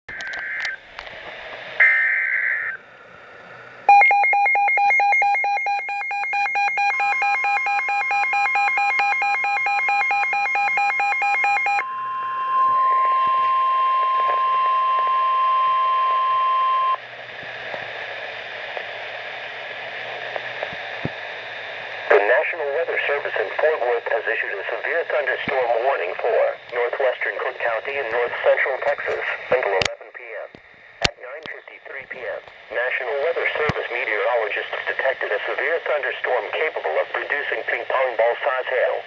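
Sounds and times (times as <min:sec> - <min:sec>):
radio hiss: 0:00.1 - 0:03.9, 0:12.4 - 0:39.0
warning alarm tone: 0:03.9 - 0:17.0.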